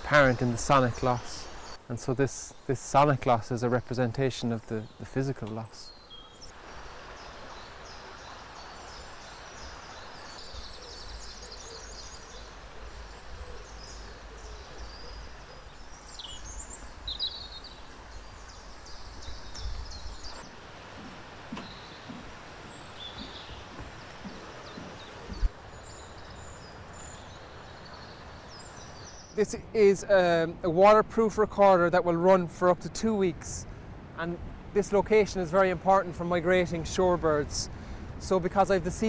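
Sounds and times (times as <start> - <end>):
background hiss: 0.0 - 39.0
birds chirping: 0.0 - 39.0
low wind rumble: 32.0 - 39.0.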